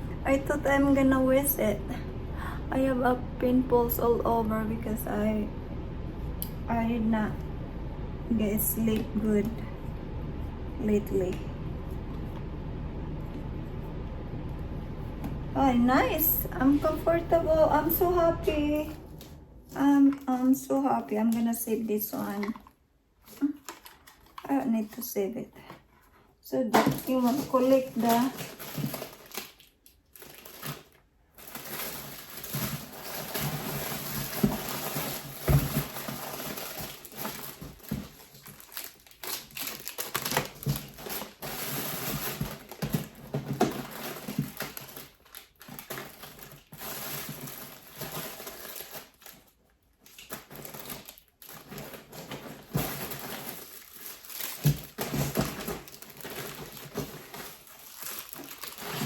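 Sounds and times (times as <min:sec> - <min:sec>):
plastic packaging crinkling: 0:15.0 - 0:59.0.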